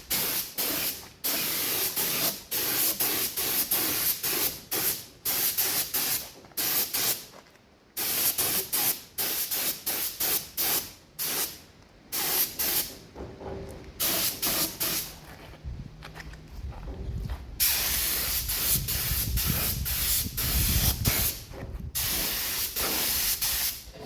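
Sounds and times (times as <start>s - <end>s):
paint spray gun hissing: 0.0s - 7.2s, 8.0s - 11.6s, 12.2s - 12.9s, 14.0s - 15.1s, 17.6s - 21.4s, 22.0s - 23.9s.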